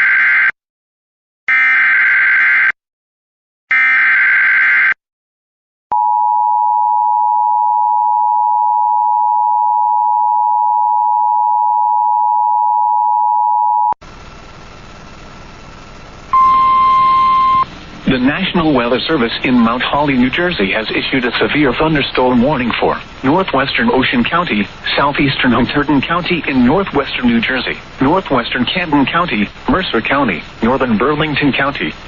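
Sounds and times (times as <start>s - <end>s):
radio hiss: 14.1s - 32.0s
steady alert tone: 16.3s - 17.7s.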